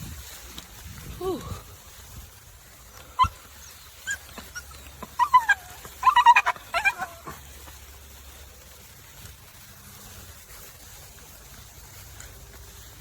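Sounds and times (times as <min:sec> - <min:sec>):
dog whining and yipping: 0:03.2 - 0:07.4.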